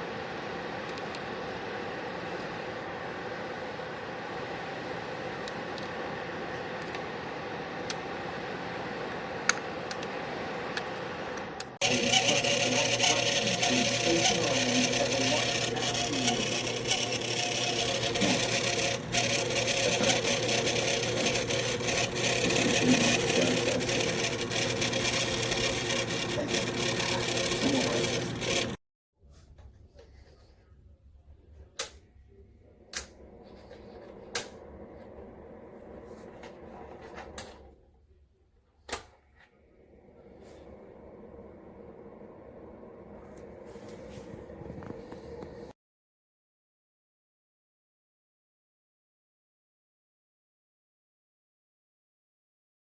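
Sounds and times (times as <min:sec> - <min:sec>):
faint whir: 0:00.0 - 0:28.8.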